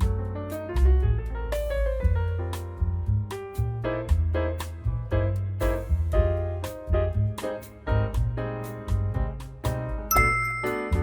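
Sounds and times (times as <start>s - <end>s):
bass line: 0.0s - 11.0s
jazzy piano tune: 0.0s - 11.0s
bright bell-like ding: 10.1s - 11.0s.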